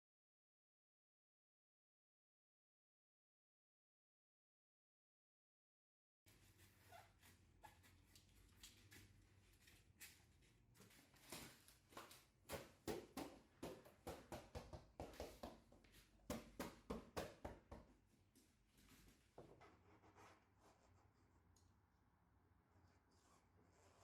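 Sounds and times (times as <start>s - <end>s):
floor mats tapping and knocking: 11.9s - 18.1s.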